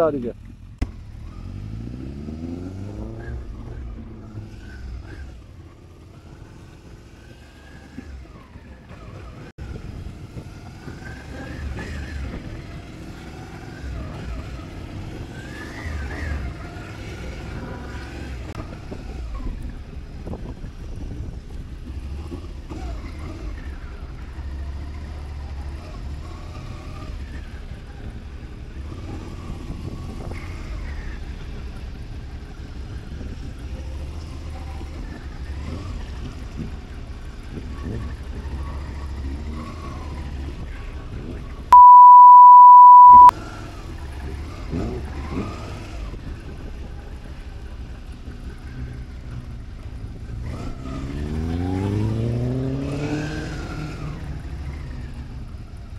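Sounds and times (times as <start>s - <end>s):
censor bleep: 41.7s - 43.3s.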